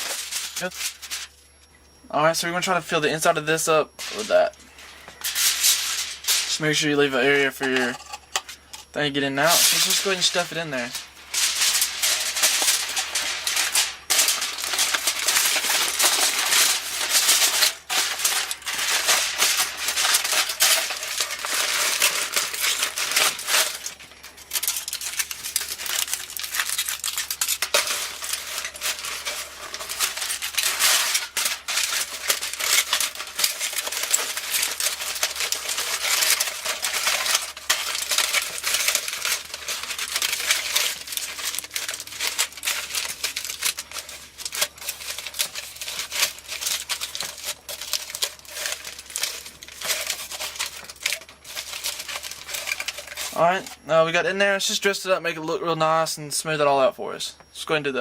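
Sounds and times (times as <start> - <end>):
aluminium foil crinkling: 0.0 - 1.5, 2.4 - 55.1.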